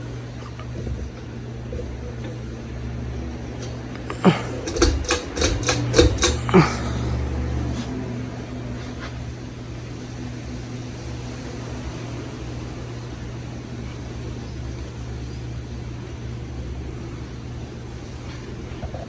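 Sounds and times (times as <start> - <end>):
ceiling fan running: 2.5 - 7.4.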